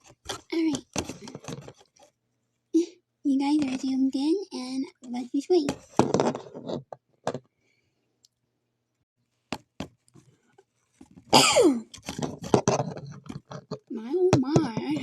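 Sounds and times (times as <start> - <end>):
child sneezing: 11.4 - 11.9.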